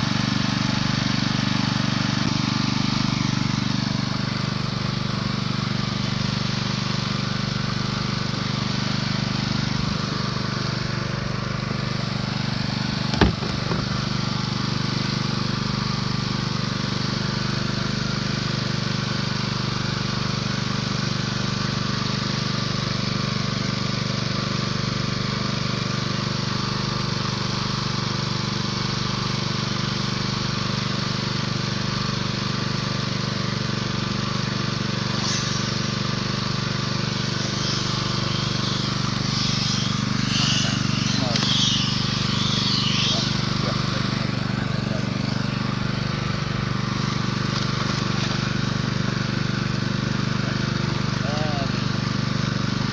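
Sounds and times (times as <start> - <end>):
motor humming: 0.0 - 16.6, 33.0 - 52.9.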